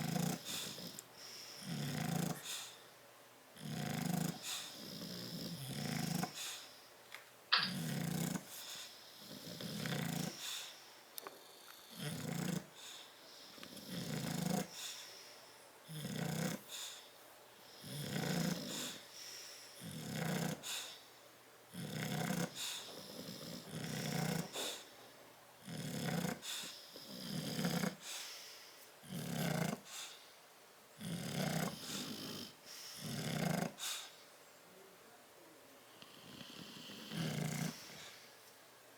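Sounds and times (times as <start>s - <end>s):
dog snoring: 0.0s - 2.8s, 3.6s - 6.8s, 7.6s - 15.0s, 15.8s - 21.0s, 21.7s - 24.9s, 25.6s - 28.2s, 29.0s - 30.2s, 31.0s - 34.2s, 36.1s - 38.3s.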